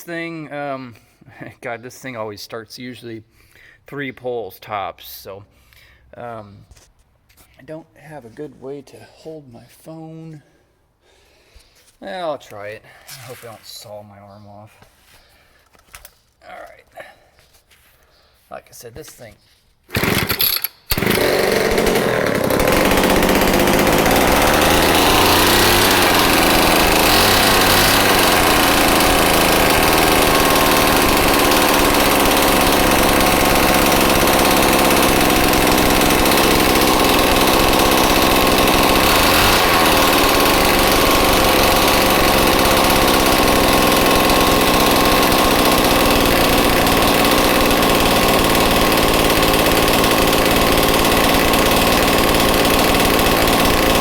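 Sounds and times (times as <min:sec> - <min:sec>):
chainsaw engine running: 0:19.9 - 0:54.0.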